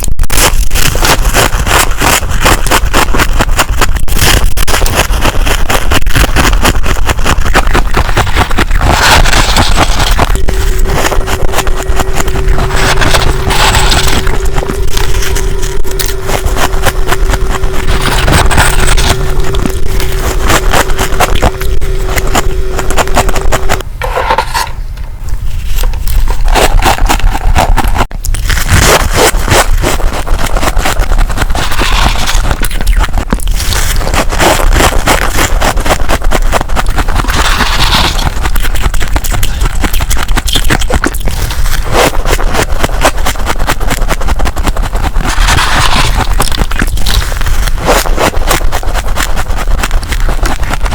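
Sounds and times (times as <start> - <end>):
frost scraped and crunched: 0.0 - 50.9
steady hum: 0.0 - 50.9.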